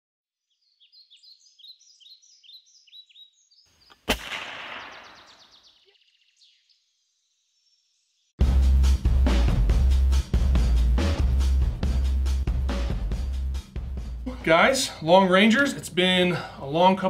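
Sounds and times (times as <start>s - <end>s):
small birds chirping: 0.4s - 8.4s
air rifle shot with echo: 3.9s - 5.7s.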